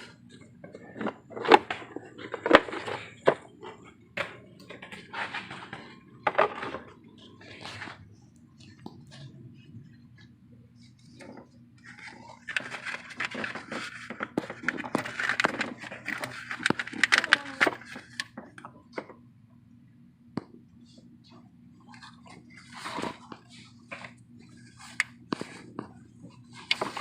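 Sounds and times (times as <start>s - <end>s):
parts clicking and rustling: 0.0s - 19.2s
low hum: 0.0s - 27.0s.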